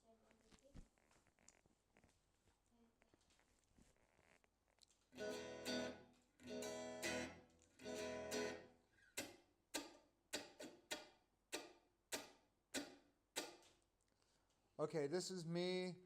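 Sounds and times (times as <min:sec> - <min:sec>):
electric guitar strumming: 0:05.2 - 0:13.5.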